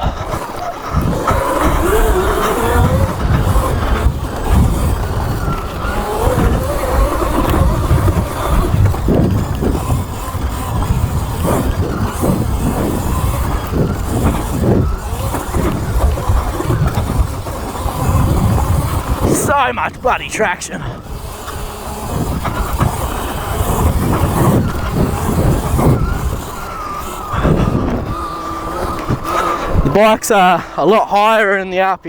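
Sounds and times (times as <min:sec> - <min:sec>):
wind and tyres on dirt: 0:00.0 - 0:32.0
electric motor whine: 0:00.2 - 0:19.4, 0:20.9 - 0:30.0.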